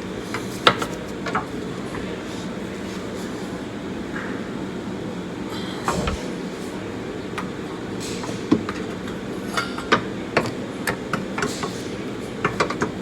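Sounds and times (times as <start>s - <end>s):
steady background hum: 5.5s - 6.7s.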